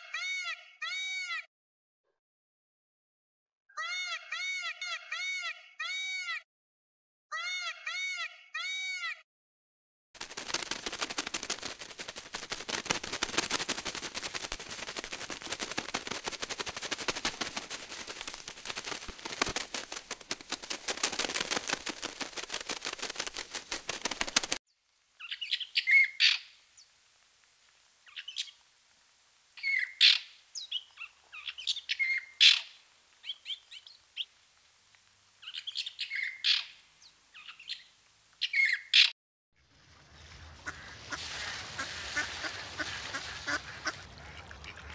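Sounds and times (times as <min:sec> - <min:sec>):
rapid clicking chatter: 0:10.2 - 0:24.6
bird chirps and calls: 0:29.6 - 0:33.9.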